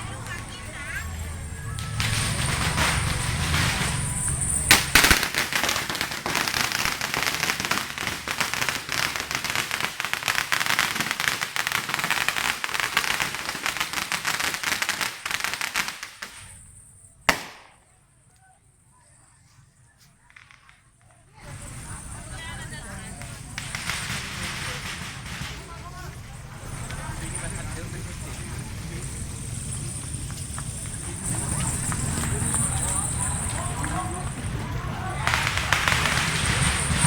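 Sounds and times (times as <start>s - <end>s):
firecrackers crackling: 0.0s - 18.3s, 20.2s - 37.0s
loud bang: 1.7s - 7.0s.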